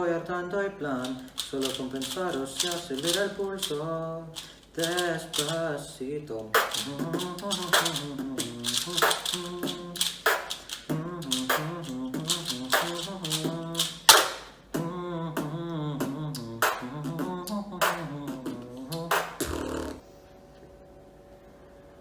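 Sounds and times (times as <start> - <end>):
hummed melody: 0.0 - 20.3
beatboxing kick and snare: 1.2 - 3.8, 6.6 - 20.0.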